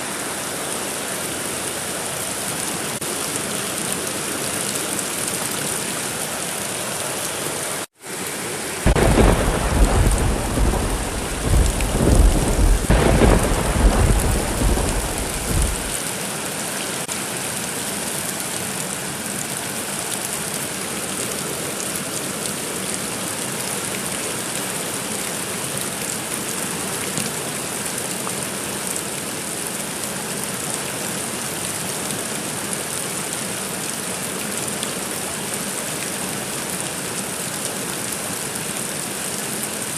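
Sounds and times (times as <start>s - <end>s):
heavy rain hissing: 0.0s - 17.2s
rolling thunder rumble: 8.9s - 16.0s.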